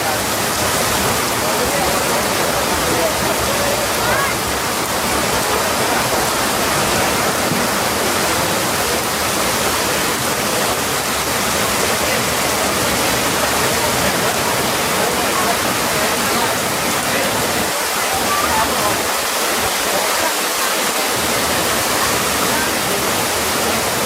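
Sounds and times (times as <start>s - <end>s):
faint voices: 0.0s - 24.0s
rushing water: 0.0s - 24.0s.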